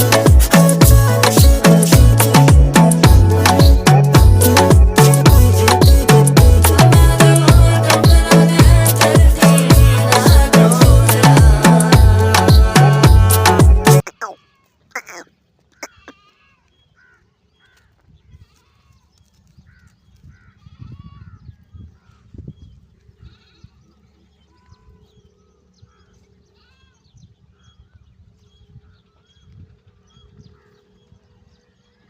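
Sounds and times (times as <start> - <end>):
goats bleating: 0.0 - 16.6.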